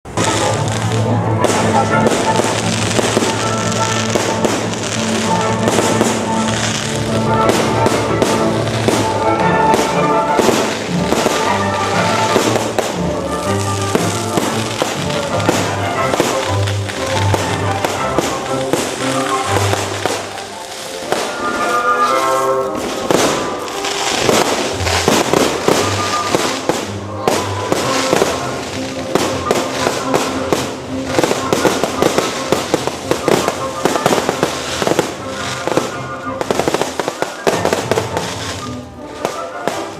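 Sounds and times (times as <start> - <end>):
fireworks bangs and crackles: 0.1 - 39.9
music with held notes: 0.1 - 39.9.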